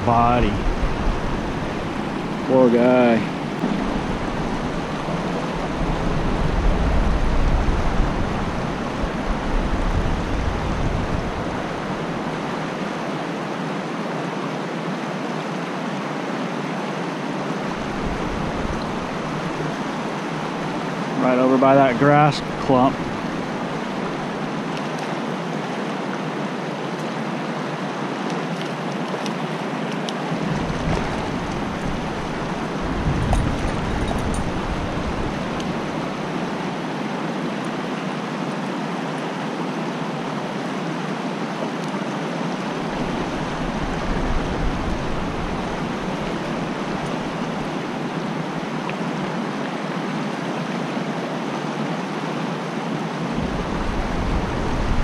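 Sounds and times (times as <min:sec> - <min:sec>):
creek rushing over rocks: 0:00.0 - 0:55.0
low rumbling: 0:03.2 - 0:12.4.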